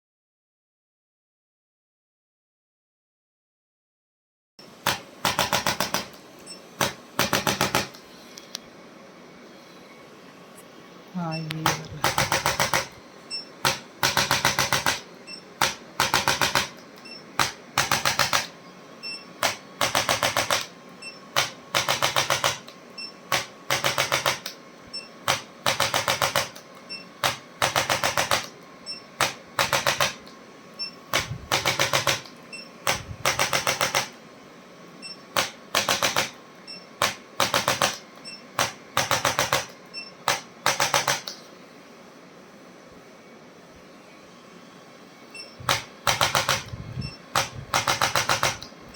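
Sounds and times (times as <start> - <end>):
adjusting instrument rapid clicks: 45.7 - 46.7, 47.4 - 48.7.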